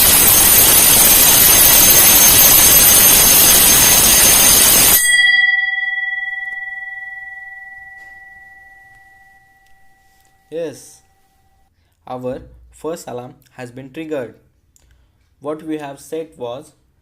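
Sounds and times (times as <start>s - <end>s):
electric alarm bell ringing: 0.0s - 11.7s
gong ringing tone: 0.0s - 11.7s.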